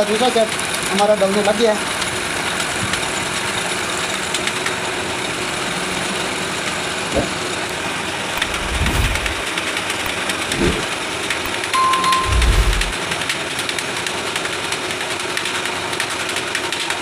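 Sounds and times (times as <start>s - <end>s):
low bumps: 8.4s - 9.4s, 10.5s - 10.9s, 12.2s - 13.0s.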